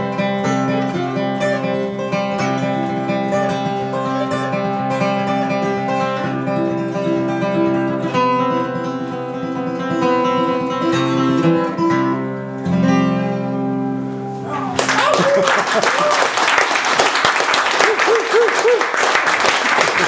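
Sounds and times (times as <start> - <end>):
acoustic guitar fingerpicking: 0.0 - 14.8.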